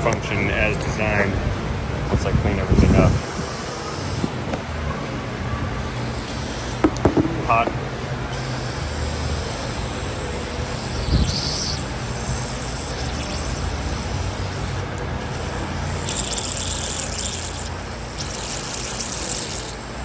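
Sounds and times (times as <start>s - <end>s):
knock: 6.8s - 7.9s.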